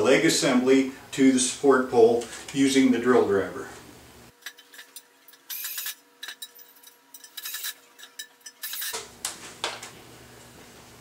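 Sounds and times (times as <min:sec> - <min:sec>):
metal scraping rubs: 0:04.4 - 0:09.0.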